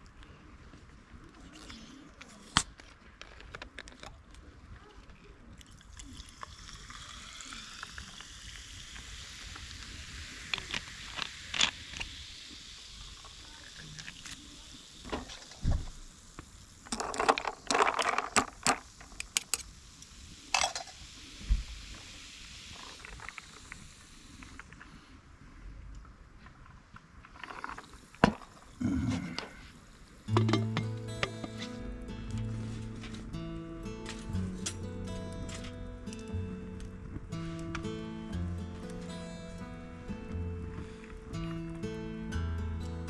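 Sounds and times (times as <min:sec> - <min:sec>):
steady hiss: 0:06.7 - 0:16.8.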